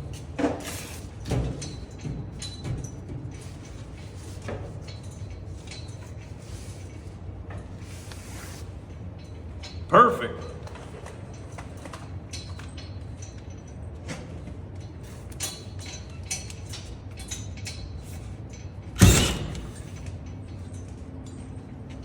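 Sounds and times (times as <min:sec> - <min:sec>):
loud thump: 0:19.0 - 0:20.0.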